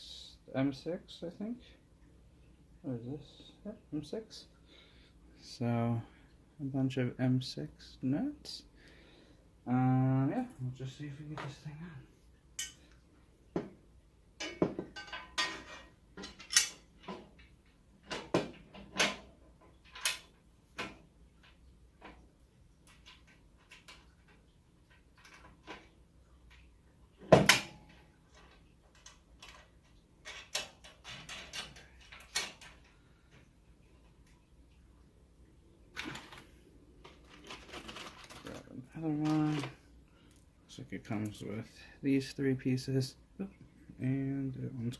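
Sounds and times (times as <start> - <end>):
metal clicks and clanks: 14.4 - 22.2, 27.4 - 32.9.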